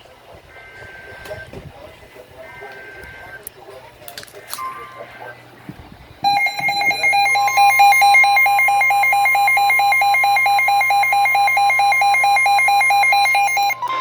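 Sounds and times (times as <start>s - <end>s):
rapid electronic alert beeps: 6.2s - 14.0s
steady high electronic tone: 6.2s - 14.0s.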